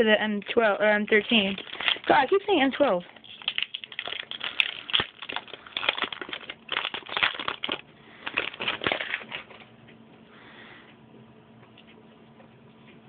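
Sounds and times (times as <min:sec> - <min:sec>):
foil wrapper crinkling: 0:01.1 - 0:09.6.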